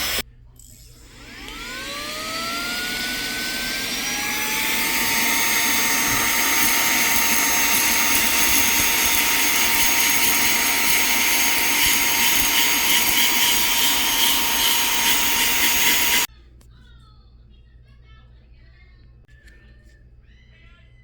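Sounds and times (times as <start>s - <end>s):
vacuum motor high whine: 0.0s - 16.3s.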